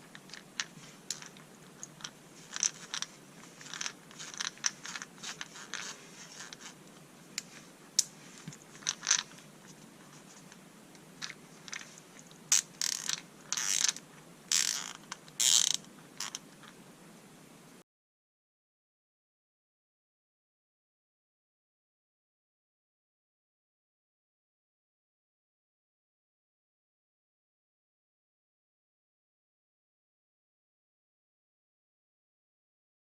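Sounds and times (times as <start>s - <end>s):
ratchet screwdriver clicking: 12.5s - 16.4s.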